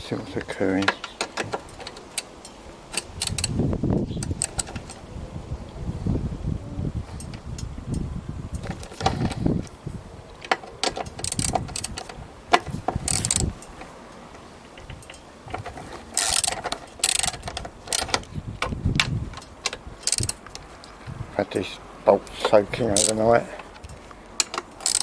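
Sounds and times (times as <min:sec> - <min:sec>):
tools and metal parts clinking: 0:00.7 - 0:05.0, 0:10.4 - 0:13.9, 0:14.7 - 0:21.1, 0:22.3 - 0:25.0
ratchet wrench clicking: 0:01.6 - 0:03.6, 0:04.2 - 0:05.0, 0:11.0 - 0:12.1, 0:12.9 - 0:13.7, 0:16.2 - 0:18.3, 0:19.0 - 0:20.6, 0:22.9 - 0:25.0.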